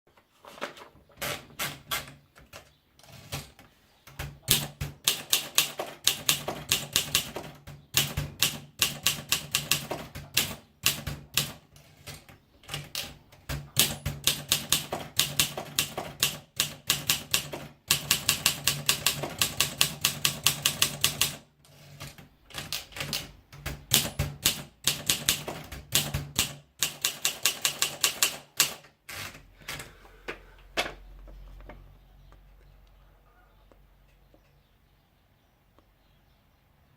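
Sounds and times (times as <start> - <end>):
manual typewriter typing: 0.6 - 30.0
faint low hum: 29.6 - 36.9.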